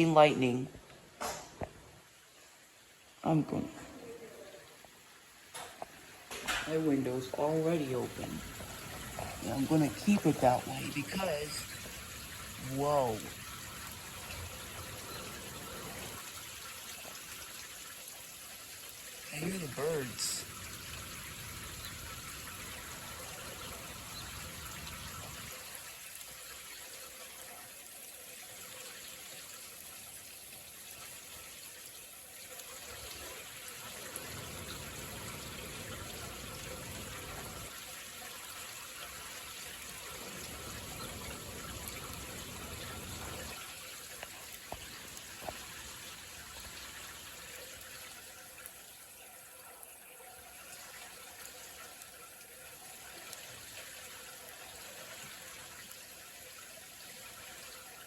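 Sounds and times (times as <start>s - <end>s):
heavy rain falling: 5.5s - 16.7s, 19.2s - 25.9s, 39.9s - 46.8s
drip-like ticks: 42.8s - 56.0s.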